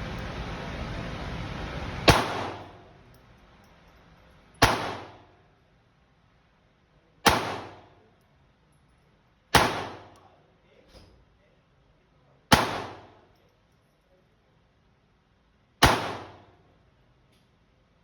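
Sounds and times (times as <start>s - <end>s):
pistol shots: 2.0s - 2.9s, 4.6s - 5.4s, 7.2s - 7.9s, 9.5s - 10.2s, 12.5s - 13.2s, 15.8s - 16.6s.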